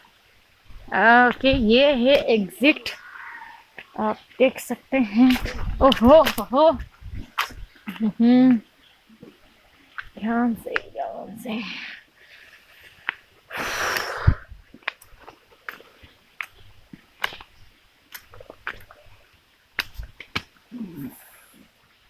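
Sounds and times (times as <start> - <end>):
footsteps on wet path: 3.7 - 8.1, 14.7 - 20.6.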